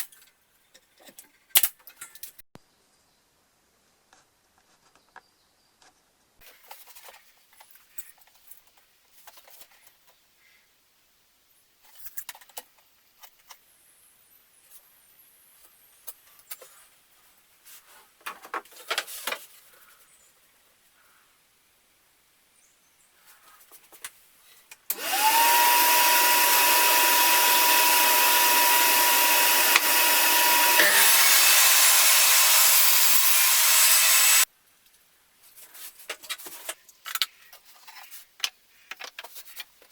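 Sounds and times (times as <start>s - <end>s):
electric power tool whining: 24.9s - 34.5s.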